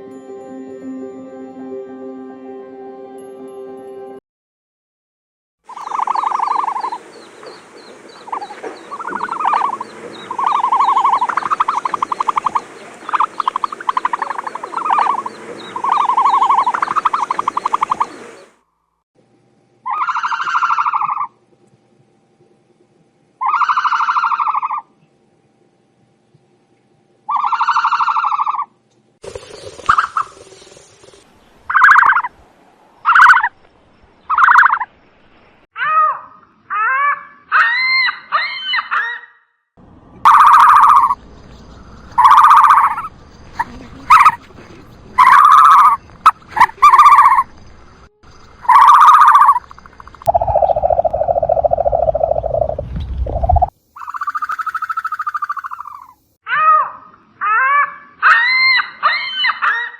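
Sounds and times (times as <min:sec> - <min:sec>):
high chirping bird calls: 0:05.7 - 0:18.5, 0:31.7 - 0:32.3, 0:33.0 - 0:33.6, 0:34.2 - 0:34.8, 0:40.2 - 0:47.6, 0:48.3 - 0:52.8, 0:53.4 - 0:56.1
honking bird calls: 0:05.7 - 0:18.6, 0:31.7 - 0:32.3, 0:33.0 - 0:33.5, 0:40.3 - 0:47.6, 0:48.4 - 0:51.0, 0:54.0 - 0:56.1
low rasping bird call: 0:08.2 - 0:18.5, 0:40.3 - 0:41.2, 0:42.1 - 0:44.5, 0:45.2 - 0:47.5, 0:48.6 - 0:52.6.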